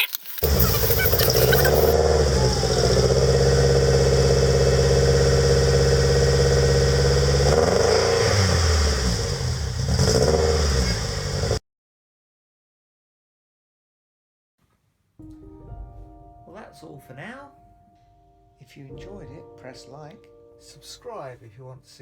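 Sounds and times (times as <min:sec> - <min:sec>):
car engine running through exhaust: 0:00.4 - 0:11.6.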